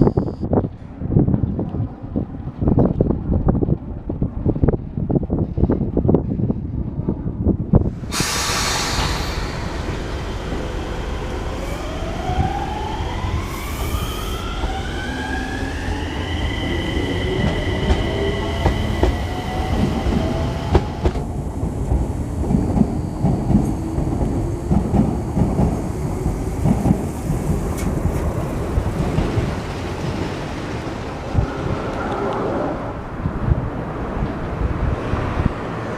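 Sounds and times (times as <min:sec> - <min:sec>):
electric train motor whine: 0:08.9 - 0:21.0
train wheels knocking on rail joints: 0:17.4 - 0:19.2.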